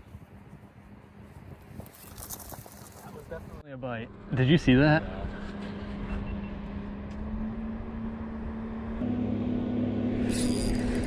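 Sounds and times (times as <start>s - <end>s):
engine hum: 2.2s - 11.0s.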